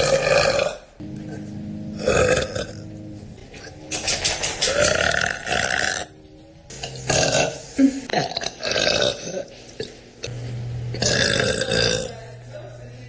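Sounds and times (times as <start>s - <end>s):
woman burping: 2.0s - 2.8s, 6.8s - 9.9s, 11.0s - 12.1s.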